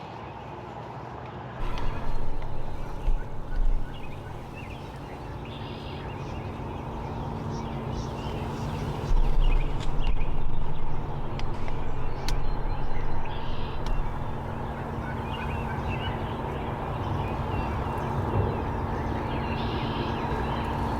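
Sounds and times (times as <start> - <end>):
wild turkeys calling: 1.6 - 6.1, 8.1 - 20.9
steady low rumble: 1.6 - 20.9
sharp clicks: 9.1 - 14.8.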